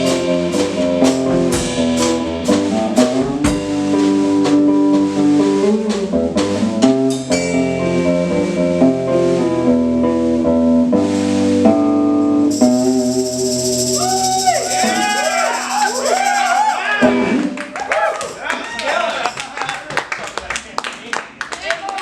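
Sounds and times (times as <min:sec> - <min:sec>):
drum kit hits: 0:00.0 - 0:09.7, 0:12.5 - 0:17.6
guitar chords ringing: 0:06.8 - 0:10.8, 0:11.7 - 0:17.4.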